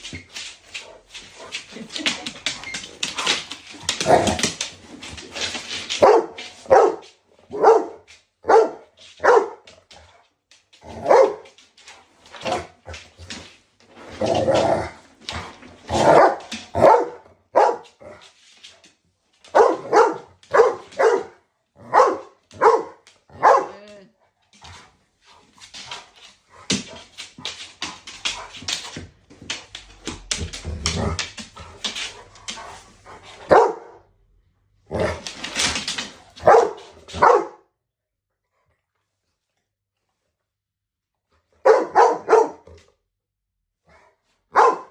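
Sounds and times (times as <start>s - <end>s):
dog barking and yipping: 6.0s - 9.6s, 11.0s - 11.5s, 16.0s - 18.0s, 19.5s - 23.9s, 33.5s - 34.0s, 36.4s - 37.6s, 41.6s - 42.7s, 44.5s - 44.9s.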